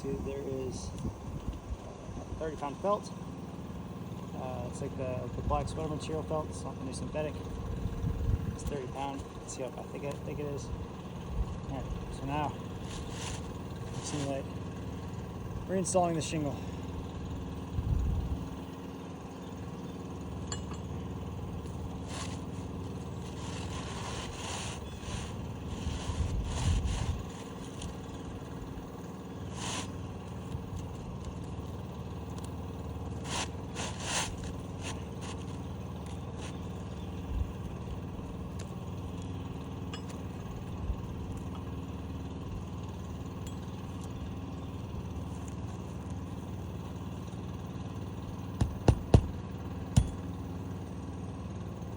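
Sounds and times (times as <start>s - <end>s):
steady engine hum: 0.0s - 51.9s
shingle scraping on roof: 12.7s - 14.4s, 21.9s - 28.0s, 33.2s - 35.6s
sharp knocks: 48.6s - 49.4s.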